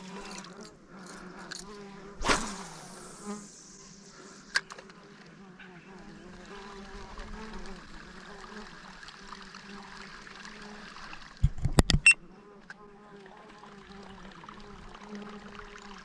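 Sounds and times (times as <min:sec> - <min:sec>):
insects buzzing: 0:00.0 - 0:11.4, 0:12.2 - 0:16.0
faint water trickle: 0:06.0 - 0:11.4, 0:13.0 - 0:16.0.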